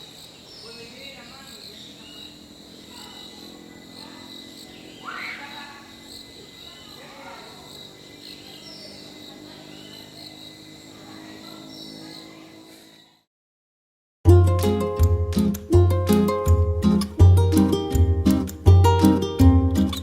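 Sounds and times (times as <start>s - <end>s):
insects shrilling chorus: 0.0s - 13.2s
short calls: 4.0s - 10.1s.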